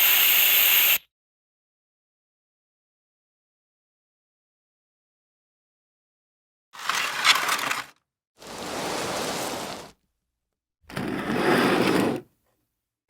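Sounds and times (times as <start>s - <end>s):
noisy hiss bursts: 0.0s - 1.0s.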